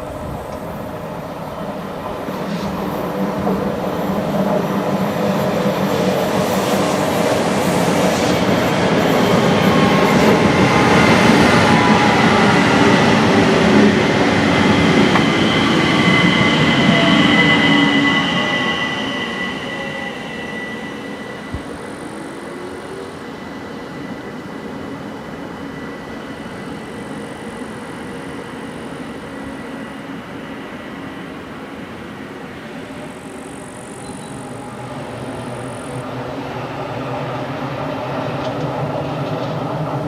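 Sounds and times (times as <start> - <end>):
train rolling noise: 0.0 - 40.0
high wheel squeal: 9.3 - 24.2.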